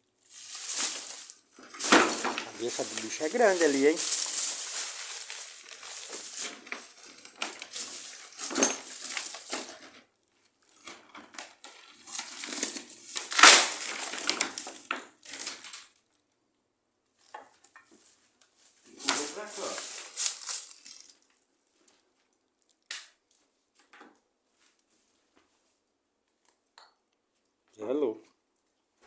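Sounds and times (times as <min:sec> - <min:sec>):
dry debris crunching: 0:00.3 - 0:09.9, 0:11.9 - 0:15.8, 0:18.9 - 0:21.2.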